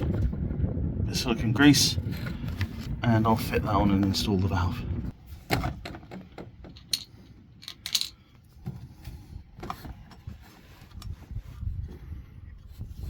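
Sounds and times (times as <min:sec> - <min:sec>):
parts clicking and rattling: 0:05.4 - 0:11.1.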